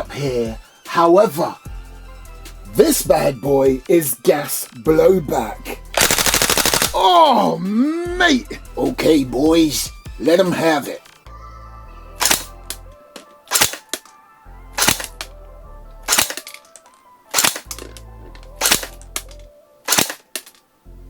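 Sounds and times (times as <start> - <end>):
background music: 0.0 - 21.0
airsoft gun single shots: 12.2 - 12.8, 13.5 - 14.1, 14.8 - 15.3, 16.1 - 16.6, 17.3 - 17.9, 18.6 - 19.3, 19.9 - 20.5.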